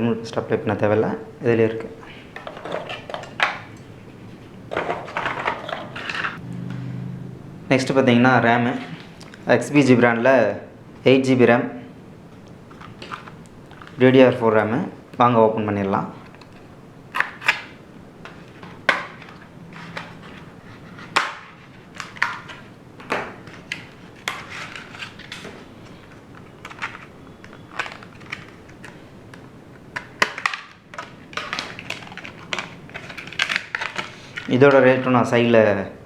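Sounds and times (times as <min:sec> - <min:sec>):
packaging clicking and crackling: 0:12.4 - 0:14.0, 0:16.2 - 0:34.8.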